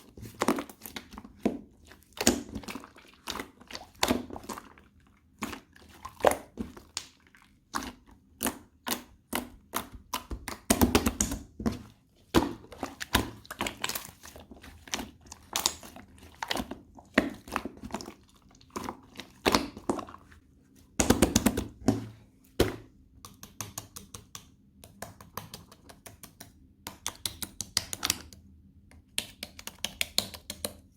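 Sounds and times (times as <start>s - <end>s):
slime squishing and clicking: 0.2s - 20.2s, 23.2s - 30.9s.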